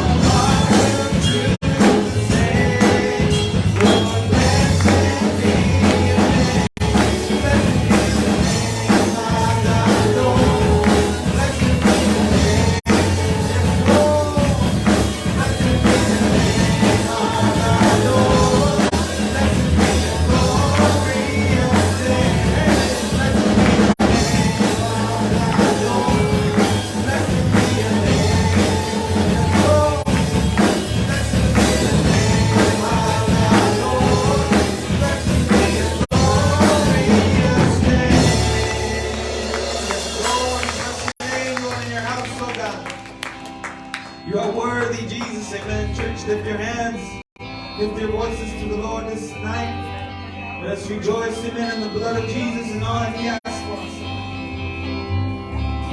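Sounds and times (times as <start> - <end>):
people singing: 0.0 - 41.4
live band playing: 0.0 - 55.9.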